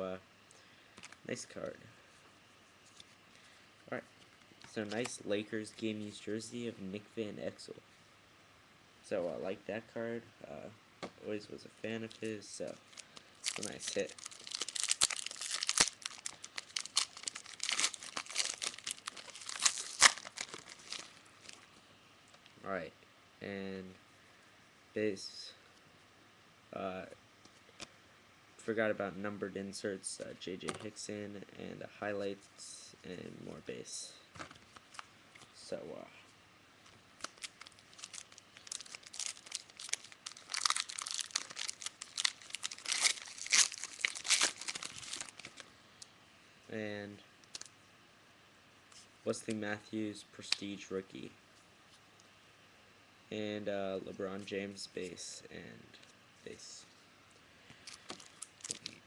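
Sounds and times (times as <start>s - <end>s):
wrapper crinkling and tearing: 12.1s - 21.7s, 37.2s - 45.7s, 47.5s - 47.7s, 57.8s - 59.0s.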